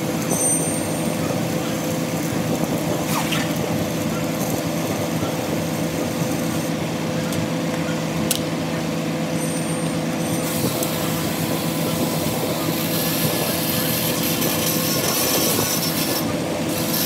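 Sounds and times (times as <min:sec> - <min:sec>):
electrical hum: 0:02.3 - 0:04.7.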